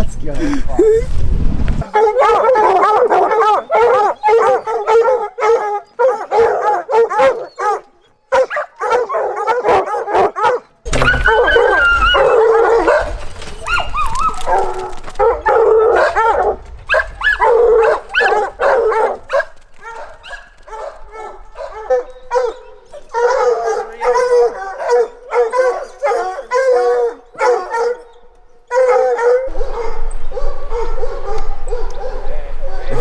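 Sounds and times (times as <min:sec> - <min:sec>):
low rumble: 0:00.7 - 0:01.8
hounds baying and barking: 0:01.8 - 0:33.0.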